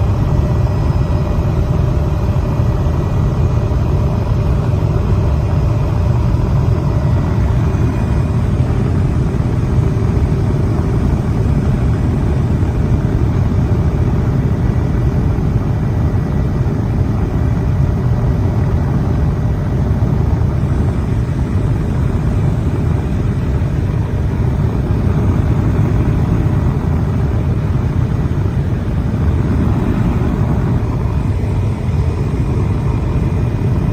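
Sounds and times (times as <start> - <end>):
aircraft rumble in flight: 0.0 - 33.9
faint whining tones: 0.0 - 33.9.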